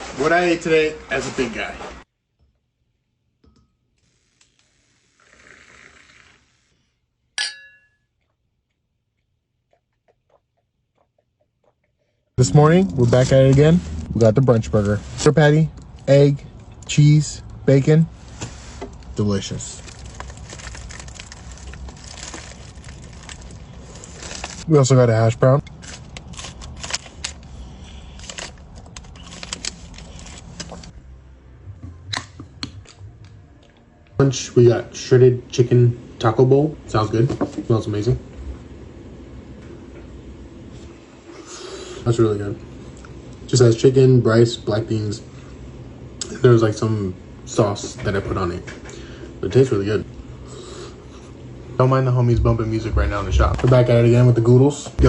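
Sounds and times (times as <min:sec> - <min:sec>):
low steady hum: 0:12.4 - 0:55.0
paper wrapper crinkling: 0:19.0 - 0:24.7, 0:25.7 - 0:30.9.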